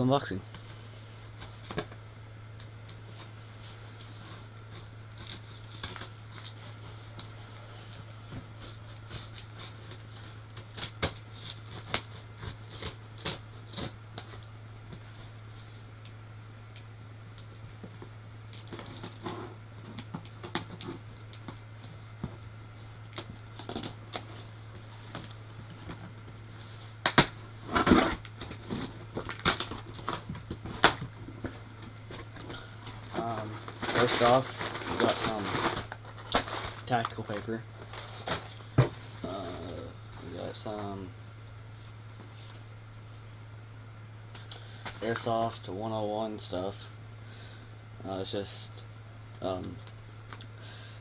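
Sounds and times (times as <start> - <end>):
steady low hum: 0.0 - 51.0
rustling of box and packing paper: 3.0 - 14.4, 23.2 - 41.0
cardboard box and paper rustling: 27.6 - 40.9.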